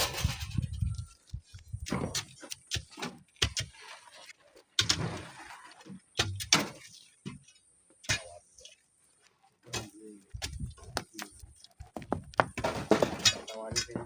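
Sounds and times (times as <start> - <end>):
sharp knocks and clatters: 9.7 - 14.0.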